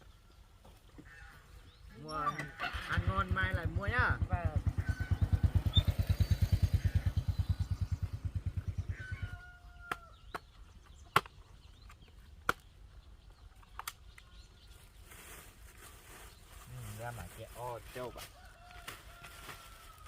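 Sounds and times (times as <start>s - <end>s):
motorbike engine running: 2.5s - 11.0s.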